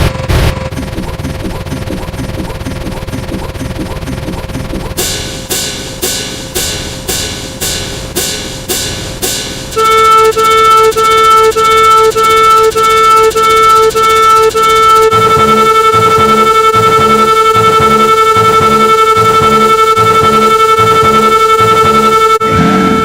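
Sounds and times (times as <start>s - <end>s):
fast low pulsing layer: 0.0s - 23.0s
pulsing electronic beeping tone: 0.0s - 23.0s
ringing percussive hits: 4.9s - 11.1s.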